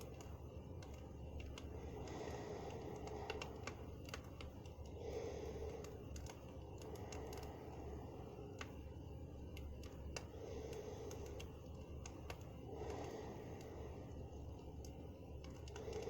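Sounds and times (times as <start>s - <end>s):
low rumble of fire: 0.0s - 16.0s
campfire crackling and popping: 3.0s - 4.9s.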